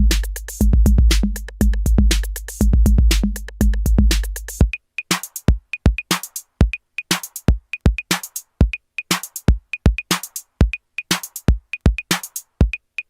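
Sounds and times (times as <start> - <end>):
low bass: 0.0 - 4.5
drum machine beat: 0.0 - 13.0.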